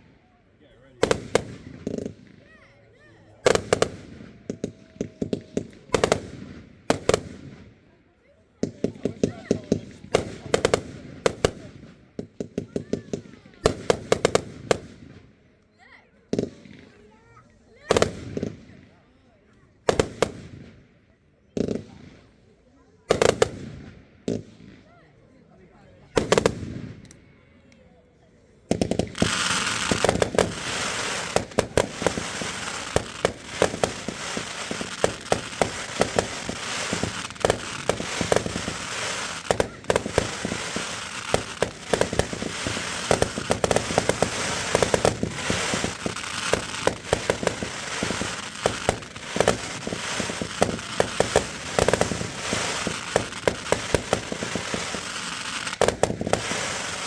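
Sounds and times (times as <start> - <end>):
fireworks bangs and crackling: 0.8 - 15.5, 16.3 - 19.1, 19.7 - 25.2, 26.0 - 27.2, 28.6 - 57.0.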